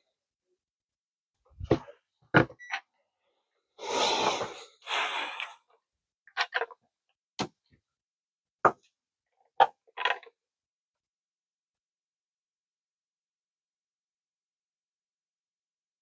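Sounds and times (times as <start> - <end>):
short breathy hisses: 3.8 - 5.7.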